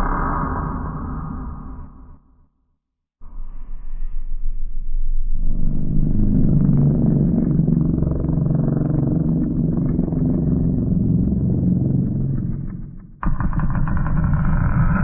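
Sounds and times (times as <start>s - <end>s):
deep rumbling monster growl: 0.0s - 2.2s, 5.5s - 15.0s.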